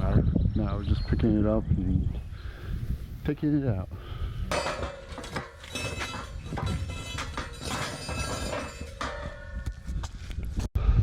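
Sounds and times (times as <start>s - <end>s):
metallic clanking and rattling: 4.5s - 10.1s.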